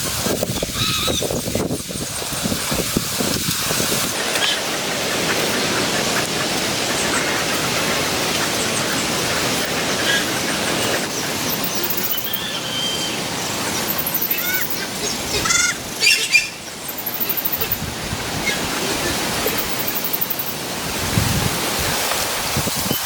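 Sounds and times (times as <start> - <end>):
birds chirping: 4.2 - 20.6.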